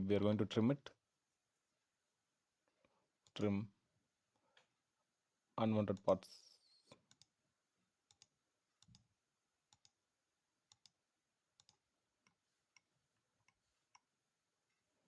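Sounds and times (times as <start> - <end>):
computer mouse clicks: 7.1 - 7.3, 8.1 - 9.1, 9.7 - 10.0, 10.7 - 11.0, 11.6 - 14.1.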